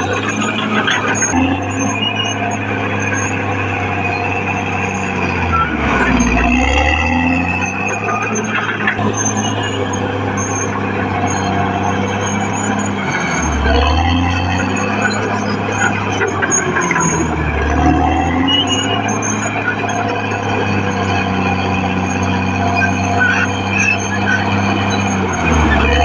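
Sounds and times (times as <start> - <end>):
bulldozer diesel engine running: 0.0 - 26.0.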